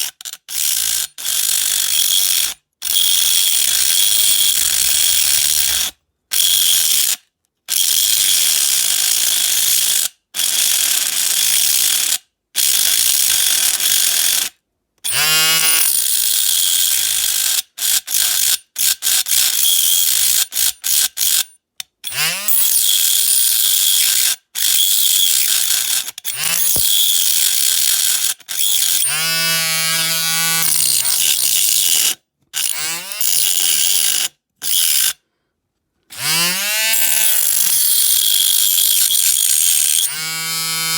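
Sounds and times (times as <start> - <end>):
rotary tool grinding metal: 0.0 - 7.1, 15.1 - 35.2, 36.2 - 40.9.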